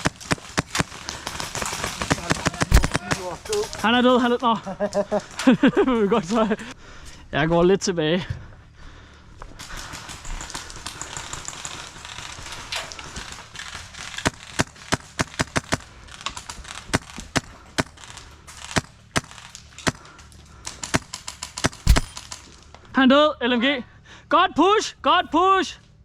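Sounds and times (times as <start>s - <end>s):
airsoft gun cracks: 14.0s - 20.1s.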